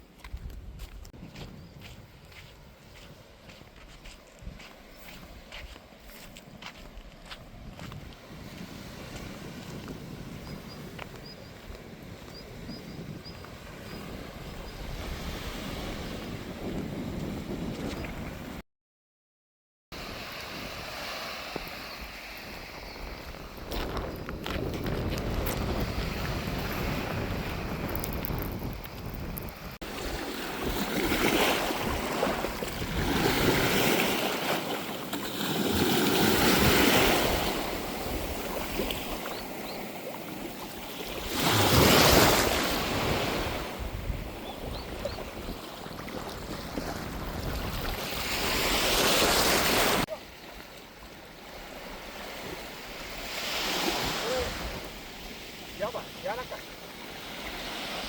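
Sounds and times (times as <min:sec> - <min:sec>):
sea waves breaking: 0:20.0 - 0:58.0.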